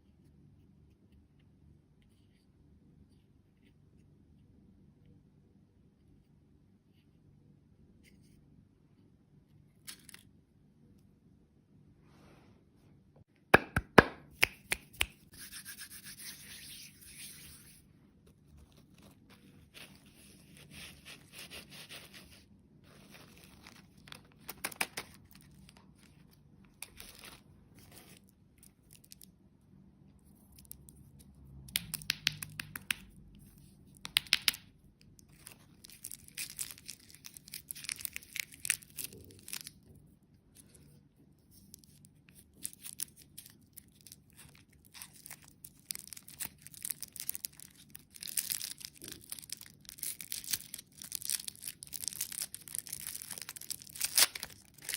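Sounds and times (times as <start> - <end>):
sharp clicks and taps: 13.6 - 15.2
scratchy rubbing and rustling: 15.2 - 24.0.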